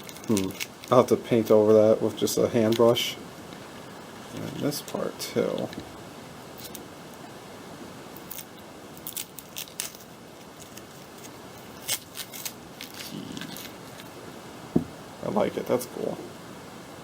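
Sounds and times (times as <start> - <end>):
tape peeling crackles: 0.0 - 1.6, 8.2 - 14.2
steady background hiss: 0.0 - 17.0.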